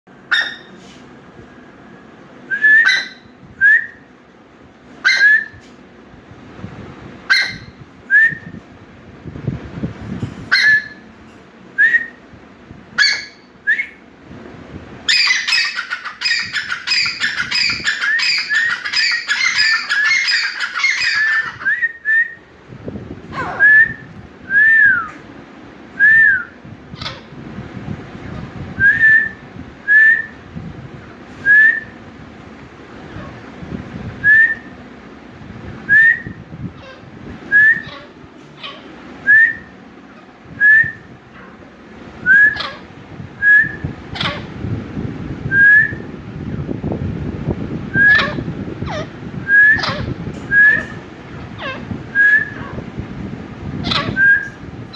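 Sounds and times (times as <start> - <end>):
bird whistled calls: 0.3 - 0.8, 2.5 - 4.0, 5.1 - 5.6, 10.6 - 11.0, 13.0 - 14.0, 15.1 - 22.4, 35.9 - 39.8, 42.2 - 44.4, 48.0 - 48.4, 49.5 - 51.0, 51.6 - 52.7, 53.8 - 54.6.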